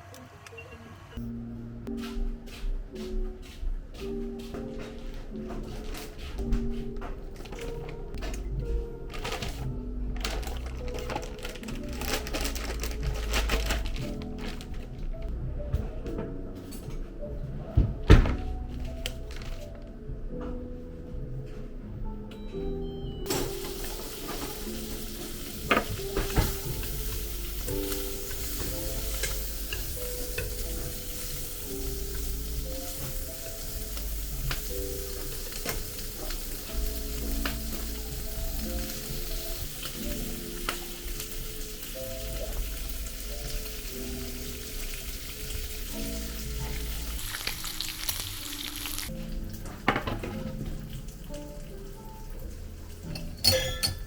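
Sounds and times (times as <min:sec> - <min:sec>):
food sizzling in a pan: 0:23.3 - 0:49.1.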